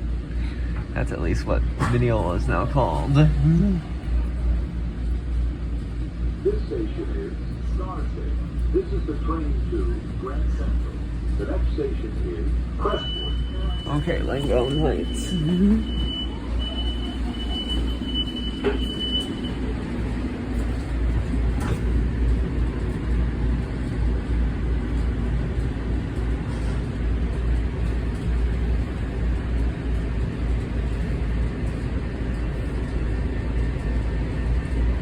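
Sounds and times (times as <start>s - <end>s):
train rumbling inside car: 0.0s - 35.0s
high electronic beep tone: 12.9s - 19.6s.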